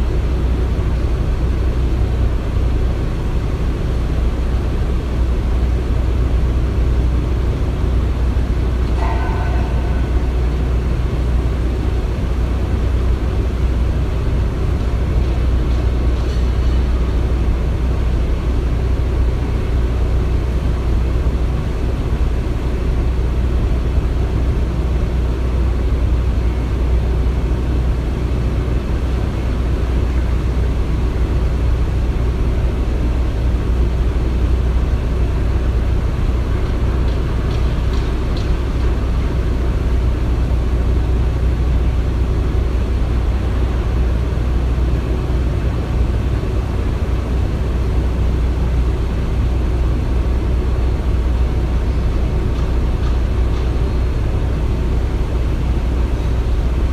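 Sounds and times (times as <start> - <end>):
construction machinery rumbling: 0.0 - 56.9.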